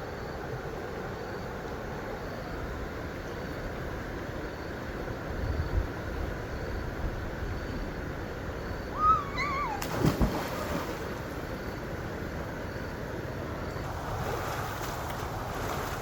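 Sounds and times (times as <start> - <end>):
outdoor background noise: 0.0 - 16.0
short wavering call: 8.9 - 9.9.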